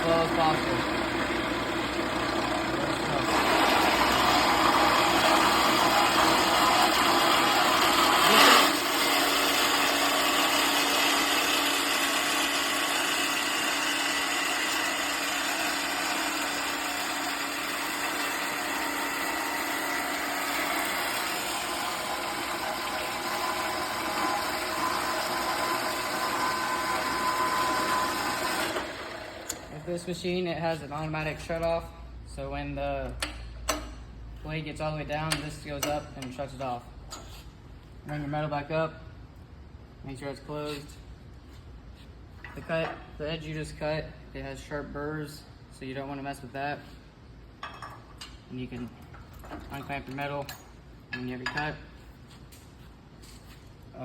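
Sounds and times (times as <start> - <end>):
band saw cutting metal: 0.0 - 30.2.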